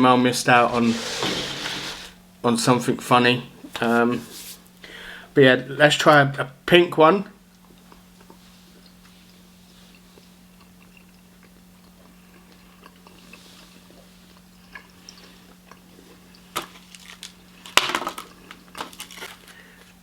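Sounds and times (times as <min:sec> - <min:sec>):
person chewing with mouth clicks: 0:07.6 - 0:16.6.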